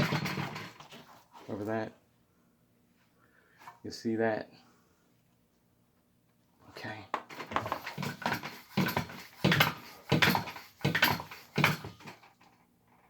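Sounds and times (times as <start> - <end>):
bicycle hand pump strokes: 7.4 - 12.3.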